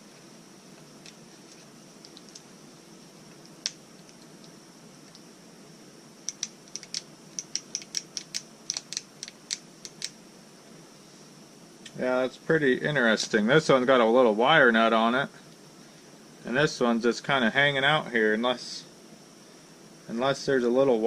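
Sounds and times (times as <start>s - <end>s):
faint steady background noise: 0.0s - 21.0s
small sharp clicks: 3.3s - 5.3s, 6.2s - 10.2s.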